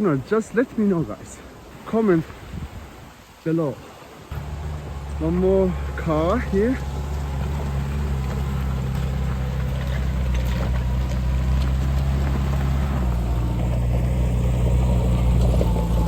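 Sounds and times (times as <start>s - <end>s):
car engine running: 4.3s - 16.0s.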